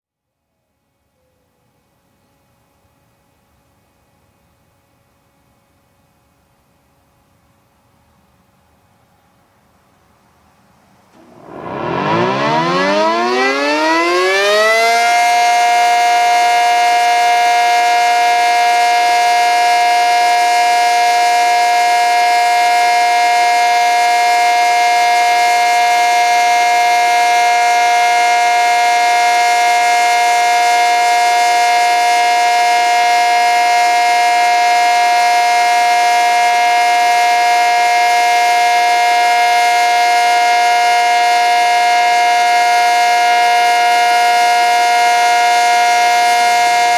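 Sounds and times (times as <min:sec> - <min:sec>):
warning siren: 0:11.2 - 0:46.9.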